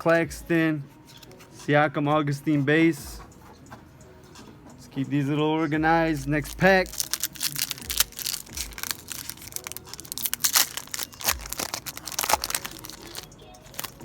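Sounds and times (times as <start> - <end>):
foil wrapper tearing and crinkling: 6.5 - 14.0.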